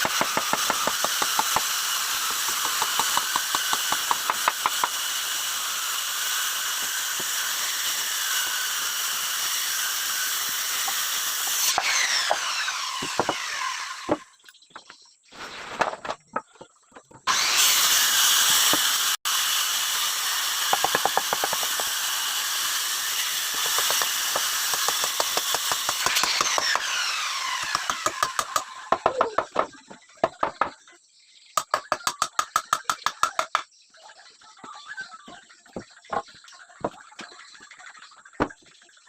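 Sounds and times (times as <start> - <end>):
power tool motor running: 0.0 - 14.4, 17.2 - 29.0.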